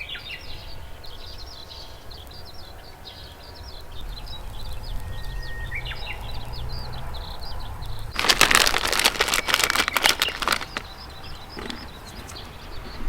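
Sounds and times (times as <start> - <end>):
small birds chirping: 0.0 - 13.0
dense crackling: 3.7 - 13.0.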